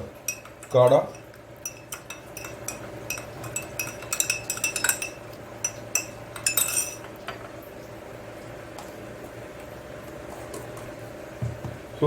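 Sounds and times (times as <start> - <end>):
spoon clinking against a cup: 0.1 - 7.2.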